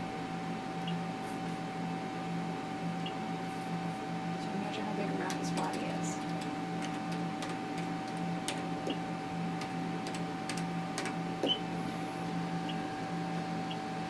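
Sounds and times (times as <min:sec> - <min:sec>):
electronic hum with whine: 0:00.0 - 0:14.0.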